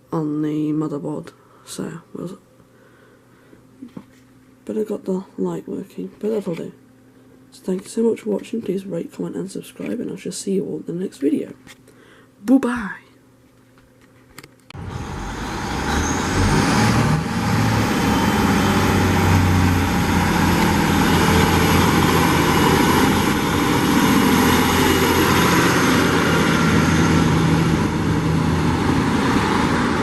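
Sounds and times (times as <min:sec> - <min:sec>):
large vehicle engine hum: 0:14.8 - 0:30.0.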